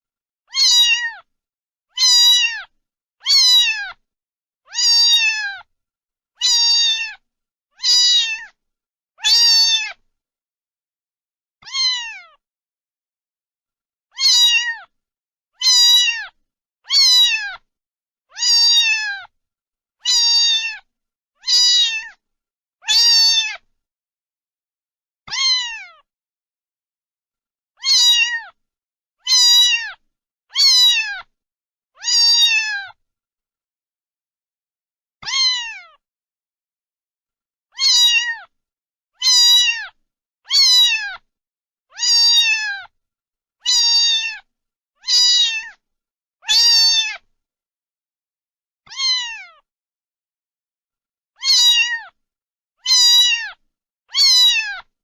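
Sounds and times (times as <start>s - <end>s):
cat meowing: 0.5s - 1.3s, 1.9s - 4.0s, 4.7s - 5.7s, 6.4s - 7.2s, 7.8s - 8.6s, 9.2s - 10.0s, 11.6s - 12.4s, 14.1s - 14.9s, 15.6s - 17.7s, 18.3s - 19.3s, 20.0s - 22.2s, 22.8s - 23.7s, 25.3s - 26.1s, 27.8s - 28.6s, 29.2s - 31.3s, 32.0s - 33.0s, 35.2s - 36.0s, 37.7s - 38.5s, 39.2s - 41.2s, 41.9s - 42.9s, 43.6s - 45.8s, 46.4s - 47.2s, 48.9s - 49.7s, 51.4s - 52.2s, 52.8s - 54.9s.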